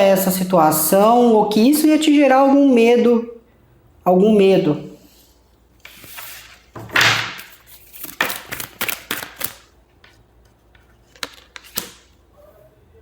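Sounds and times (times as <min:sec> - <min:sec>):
cards shuffling: 0:05.8 - 0:12.1
cards snapping and slapping: 0:07.0 - 0:09.7, 0:11.1 - 0:12.1.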